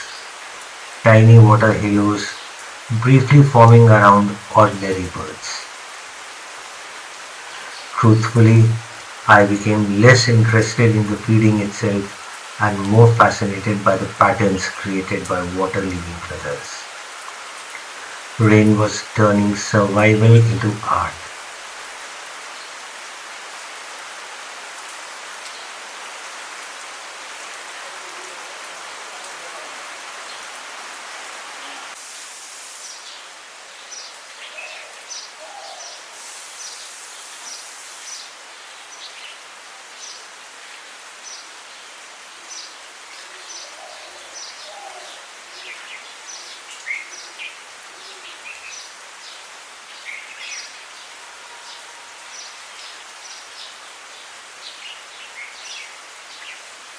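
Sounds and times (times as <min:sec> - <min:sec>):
rain hissing: 0:00.0 - 0:56.9
birds chirping: 0:01.1 - 0:05.7, 0:07.4 - 0:21.3.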